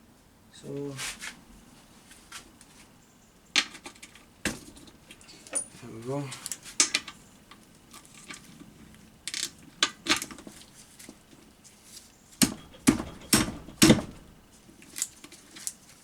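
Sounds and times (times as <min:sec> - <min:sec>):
heavy knocks: 0:12.4 - 0:14.4
metal tools clinking: 0:12.5 - 0:14.4.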